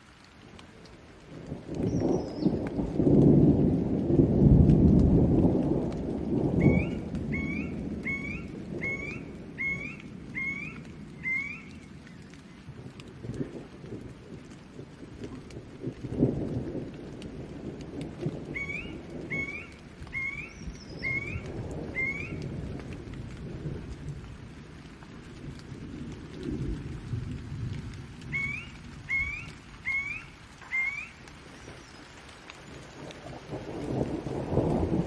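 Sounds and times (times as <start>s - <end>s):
steady rain: 0.0s - 35.0s
low rolling thunder: 1.2s - 32.0s, 32.6s - 35.0s
bird chirping: 18.6s - 21.4s.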